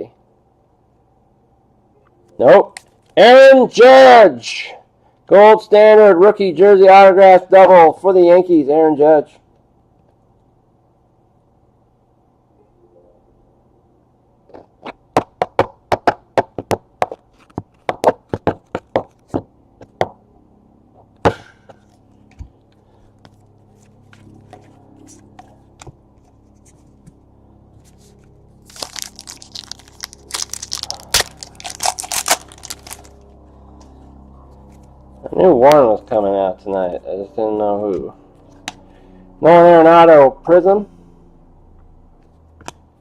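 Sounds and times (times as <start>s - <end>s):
wrapper tearing and crinkling: 28.6s - 33.2s
trading cards snapping: 28.7s - 33.2s.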